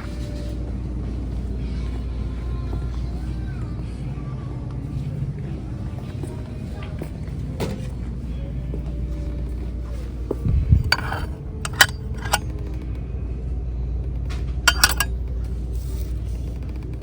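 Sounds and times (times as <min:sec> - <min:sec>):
low store background hum: 0:00.0 - 0:17.0
dishware clinking: 0:10.8 - 0:12.5, 0:14.7 - 0:15.1.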